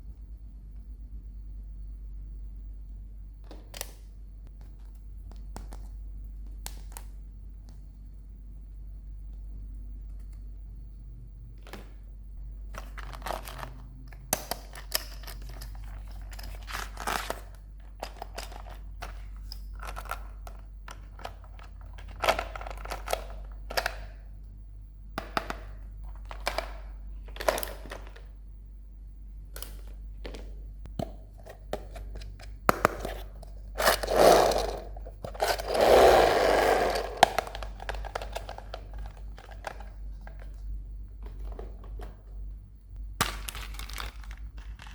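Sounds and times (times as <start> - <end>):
crinkling rustles: 12.7 - 14.1, 14.7 - 23.8, 37.2 - 42.3, 43.2 - 44.9
plastic packaging crackling: 12.7 - 24.2, 36.9 - 42.2, 43.2 - 44.9.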